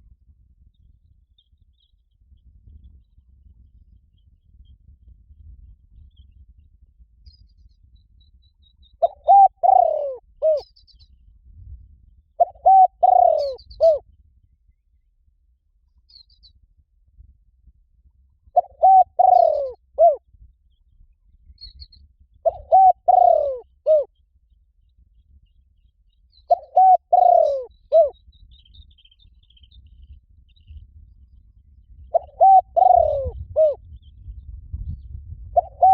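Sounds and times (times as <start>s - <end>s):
small birds chirping: 6.0s - 11.3s, 12.4s - 14.0s, 16.0s - 16.6s, 18.6s - 35.9s
dove cooing: 9.0s - 10.6s, 12.4s - 14.0s, 18.5s - 20.2s, 22.4s - 24.1s, 26.5s - 28.2s, 32.1s - 33.8s, 35.6s - 35.9s.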